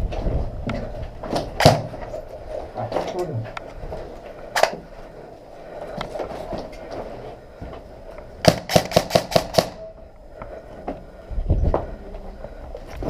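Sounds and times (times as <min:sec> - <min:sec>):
airsoft gun shots: 0:01.6 - 0:01.9, 0:08.4 - 0:09.8.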